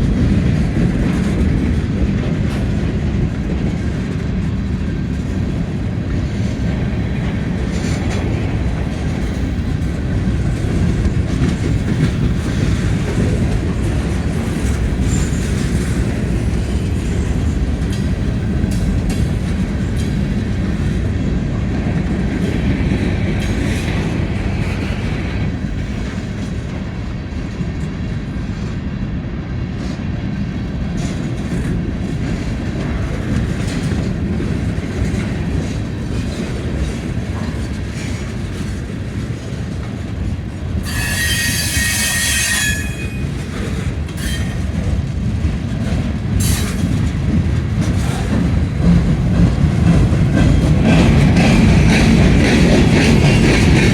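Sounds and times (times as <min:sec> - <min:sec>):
freight train rumbling past: 0:00.0 - 0:53.9
shrill wheel squeal: 0:40.8 - 0:43.3, 0:44.2 - 0:44.6.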